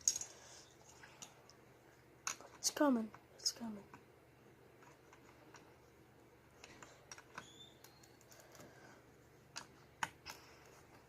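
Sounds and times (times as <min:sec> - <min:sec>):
plastic bricks clicking: 0:00.0 - 0:00.3.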